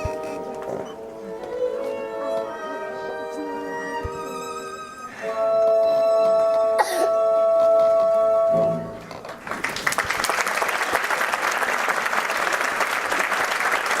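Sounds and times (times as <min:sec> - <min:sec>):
audience applause: 0:09.2 - 0:14.0.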